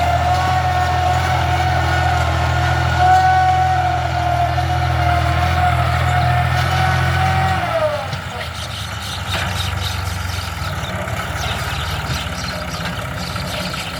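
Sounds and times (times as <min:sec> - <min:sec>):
tractor engine running under load: 0:00.0 - 0:13.9.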